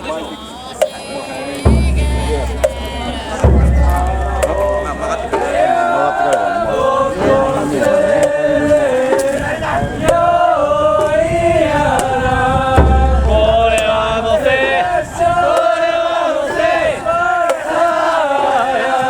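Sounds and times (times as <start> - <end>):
men chanting: 0.0 - 19.0
wind on microphone: 1.7 - 15.8.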